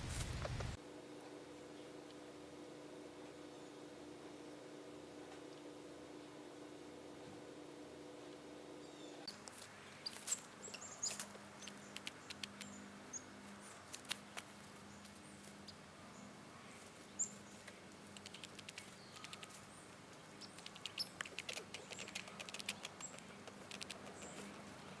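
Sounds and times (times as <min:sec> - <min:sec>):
squirrels clicking and chirping: 0:00.0 - 0:00.8, 0:09.3 - 0:15.8, 0:17.2 - 0:25.0
faint low hum: 0:00.0 - 0:25.0.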